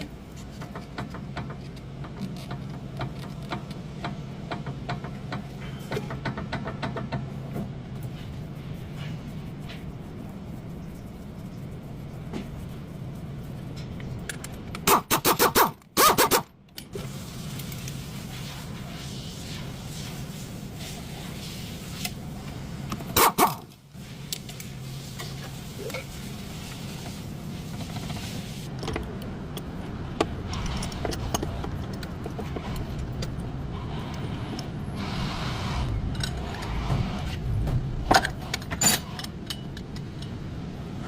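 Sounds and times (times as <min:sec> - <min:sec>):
steady low rumble: 0:07.4 - 0:14.9, 0:28.6 - 0:41.0
metallic clinks and clanks: 0:38.2 - 0:40.4.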